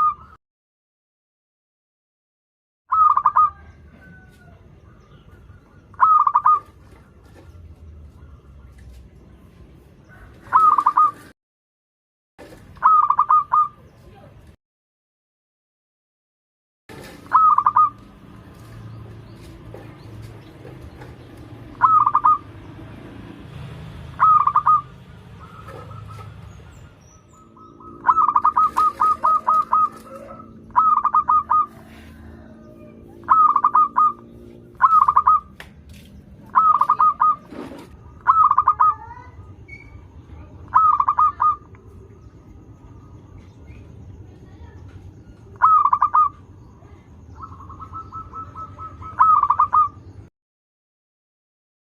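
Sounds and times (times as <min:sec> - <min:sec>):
dove cooing: 0:02.9 - 0:04.2, 0:05.0 - 0:07.4, 0:10.1 - 0:11.3, 0:12.8 - 0:13.8, 0:16.9 - 0:18.2, 0:19.9 - 0:22.6, 0:24.0 - 0:35.5, 0:36.5 - 0:39.4, 0:40.5 - 0:41.9, 0:45.6 - 0:46.5, 0:47.4 - 0:50.0.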